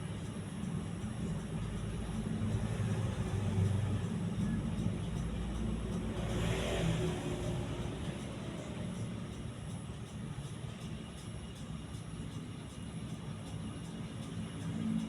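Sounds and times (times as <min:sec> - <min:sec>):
ceiling fan motor hum: 0:00.0 - 0:15.0.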